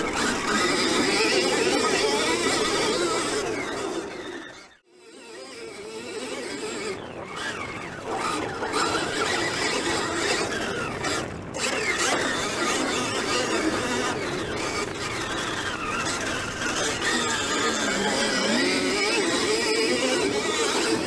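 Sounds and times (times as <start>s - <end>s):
motocross bike engine revving: 15.8s - 21.0s.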